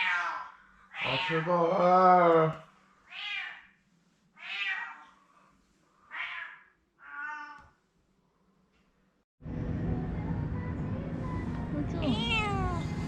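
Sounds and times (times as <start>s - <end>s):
cat meowing: 0.0s - 1.5s, 3.1s - 3.7s, 4.4s - 5.1s, 6.1s - 7.8s, 12.0s - 13.0s.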